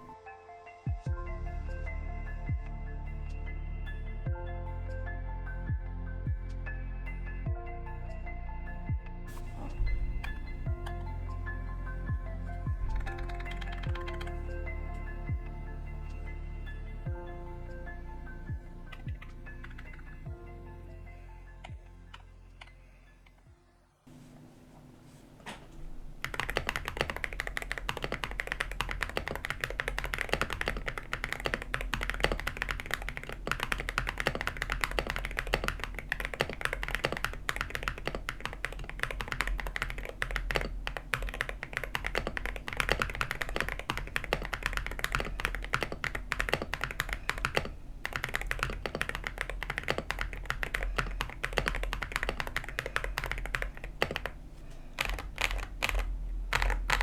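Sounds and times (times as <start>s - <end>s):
mechanical keyboard typing: 12.6s - 14.6s, 26.0s - 57.0s
faint steady low hum: 24.1s - 57.0s.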